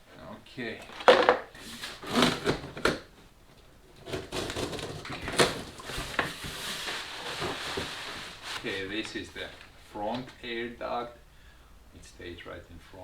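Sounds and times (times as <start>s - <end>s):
packaging rustling and crinkling: 0.8s - 3.2s, 3.9s - 10.4s.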